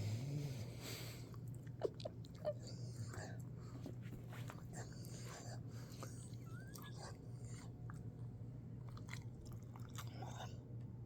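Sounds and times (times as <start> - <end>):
dog breathing and snuffling: 0.0 - 1.3.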